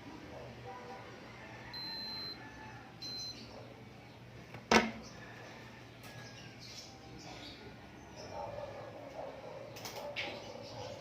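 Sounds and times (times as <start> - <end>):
high-pitched electronic beeps: 1.8 - 2.4, 3.0 - 3.4.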